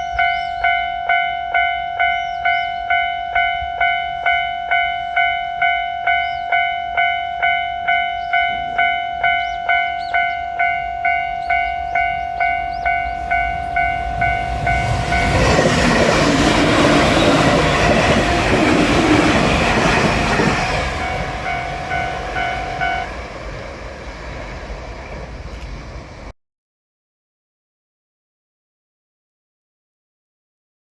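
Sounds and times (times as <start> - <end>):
level crossing bell dinging: 0.0 - 15.4, 20.5 - 23.1
electric train rushing past: 0.0 - 26.3.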